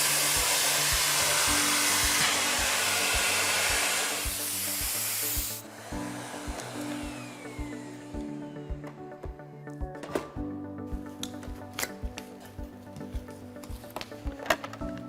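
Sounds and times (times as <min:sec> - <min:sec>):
vacuum cleaner running: 0:00.0 - 0:09.5
background music with steady beat: 0:00.0 - 0:15.0.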